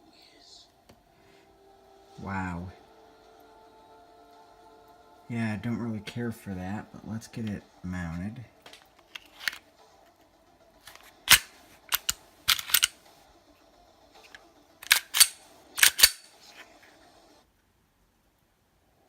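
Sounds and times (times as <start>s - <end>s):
pistol parts clicking: 8.7s - 9.7s, 10.8s - 13.0s, 14.8s - 16.4s.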